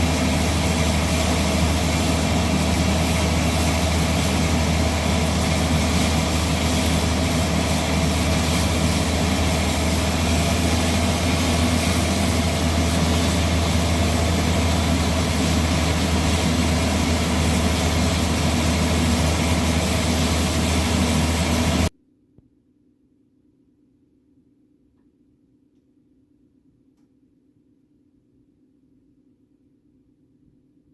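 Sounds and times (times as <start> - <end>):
diesel truck engine running: 0.0 - 21.9.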